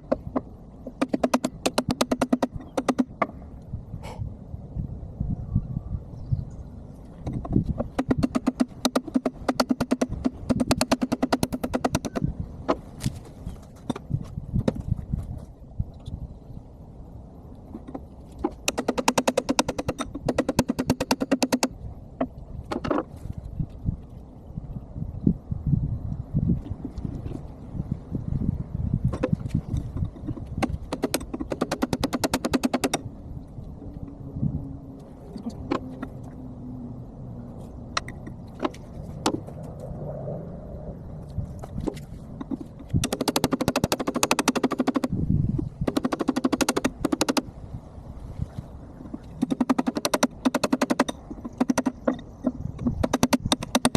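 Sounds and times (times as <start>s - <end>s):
steady low hum: 0.0s - 53.9s
metal clicks and knocks: 41.8s - 45.1s, 49.1s - 53.9s.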